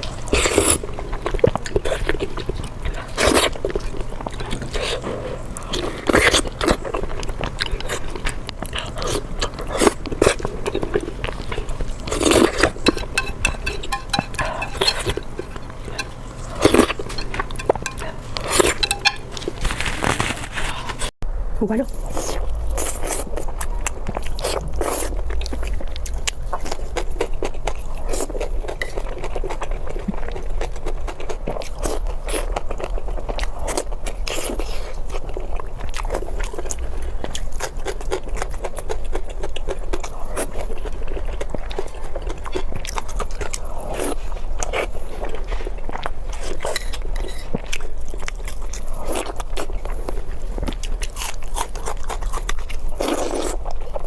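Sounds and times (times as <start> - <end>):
crunchy chewing: 0.0 - 21.1, 21.9 - 54.0
scrapes: 11.3 - 21.2.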